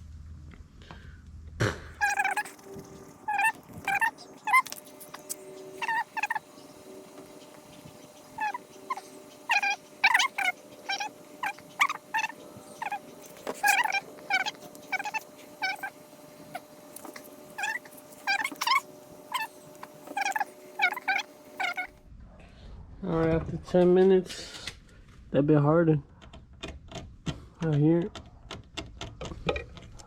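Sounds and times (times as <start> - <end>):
stick squeaking in compound: 2.0 - 21.9.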